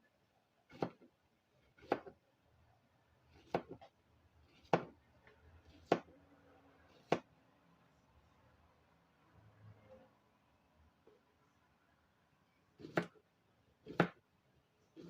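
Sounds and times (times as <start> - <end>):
knife chopping on cutting board: 0.7 - 1.1, 1.8 - 2.2, 3.3 - 3.9, 4.5 - 5.0, 5.8 - 6.1, 6.9 - 7.3, 12.8 - 13.2, 13.8 - 14.2.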